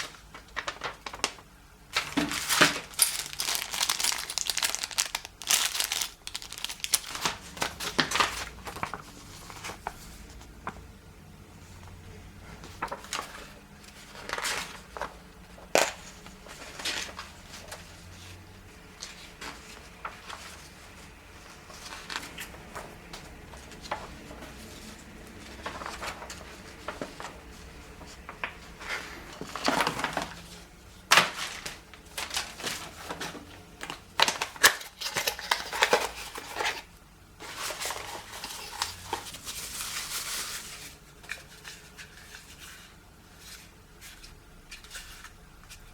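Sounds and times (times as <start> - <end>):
packaging crinkling: 0.0 - 10.8, 21.6 - 42.8
rustling: 0.0 - 10.9, 34.6 - 45.9.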